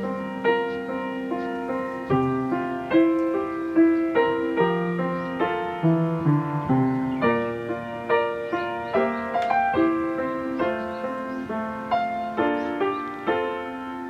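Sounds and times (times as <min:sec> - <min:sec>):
gentle piano melody: 0:00.0 - 0:14.0.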